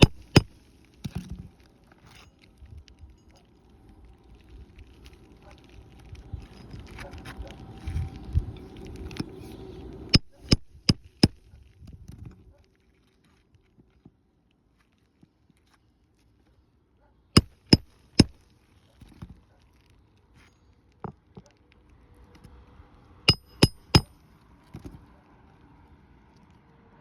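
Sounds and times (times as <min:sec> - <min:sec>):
hammer striking nails: 0:00.0 - 0:00.6, 0:10.2 - 0:11.4, 0:17.4 - 0:18.4, 0:23.3 - 0:24.2.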